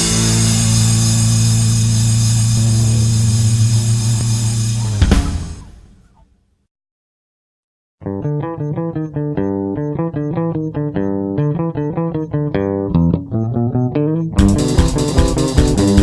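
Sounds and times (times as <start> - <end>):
plucked guitar and bass: 0.0 - 5.3, 8.0 - 16.0
rock band with drums: 0.0 - 6.0, 14.2 - 16.0.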